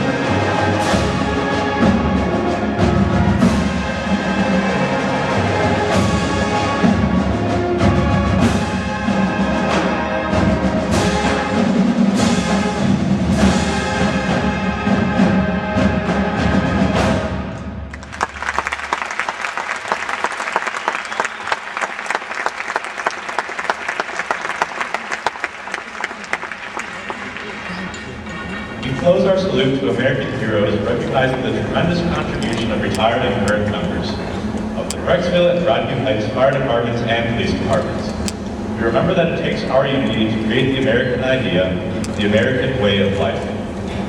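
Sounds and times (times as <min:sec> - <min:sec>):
drum strokes: 0:00.0 - 0:17.6
marching band playing: 0:00.0 - 0:44.0
crowd applauding: 0:17.9 - 0:28.8.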